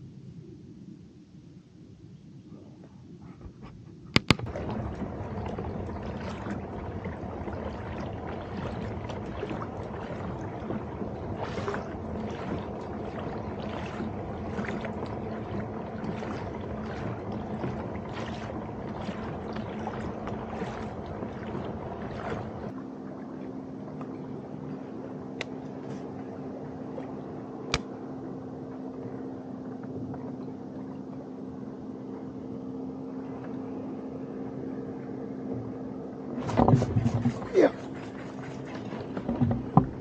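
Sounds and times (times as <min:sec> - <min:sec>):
water washing against hull: 0:03.3 - 0:40.0
paddle splashing: 0:04.2 - 0:28.0, 0:36.3 - 0:40.0.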